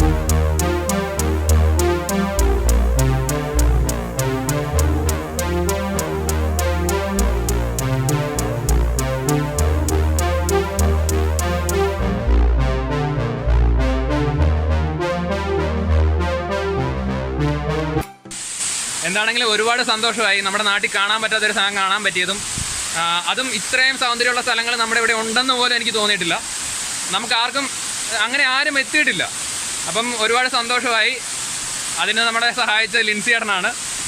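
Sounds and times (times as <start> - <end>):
synthesizer music with drum beat: 0.0 - 12.3.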